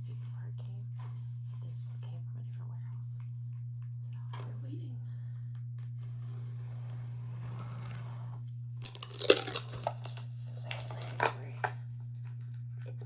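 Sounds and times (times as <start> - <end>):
steady low hum: 0.0 - 13.0
cardboard tearing and crinkling: 8.8 - 11.7.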